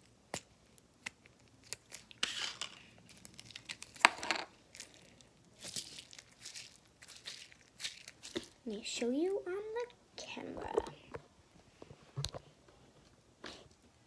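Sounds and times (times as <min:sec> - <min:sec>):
slime crackling and popping: 0:00.3 - 0:08.7.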